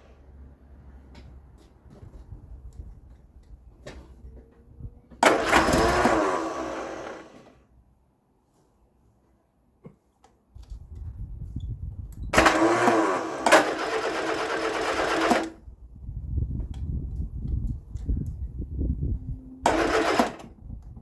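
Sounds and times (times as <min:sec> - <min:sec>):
car starter motor cranking: 0:05.2 - 0:07.6, 0:12.4 - 0:15.6, 0:19.7 - 0:20.6.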